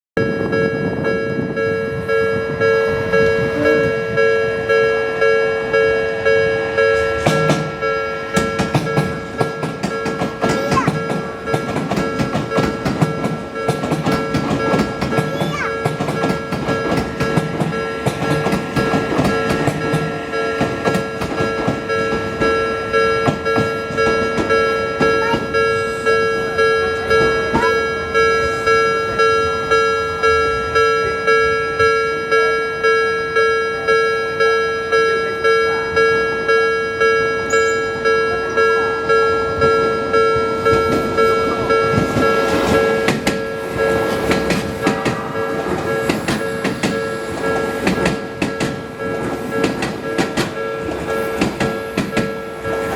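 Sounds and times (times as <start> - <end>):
level crossing warning bell: 0.2 - 52.9
train wheels clacking on rails: 0.2 - 52.9.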